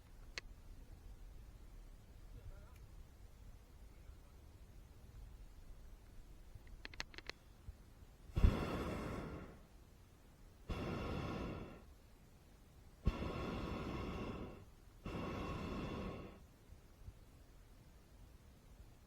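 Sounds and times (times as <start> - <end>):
propane burner blasts: 8.3 - 9.6, 10.6 - 11.9, 13.0 - 16.5.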